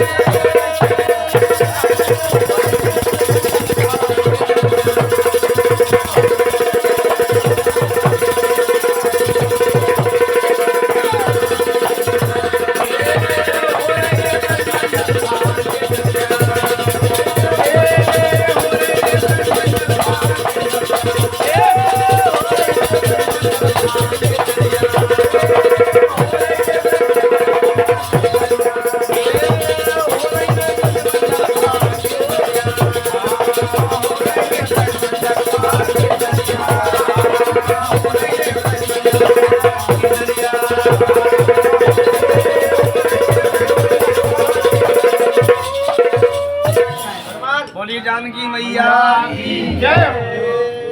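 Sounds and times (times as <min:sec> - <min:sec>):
fast drumbeat: 0:00.0 - 0:47.4
held drone: 0:49.1 - 0:50.9.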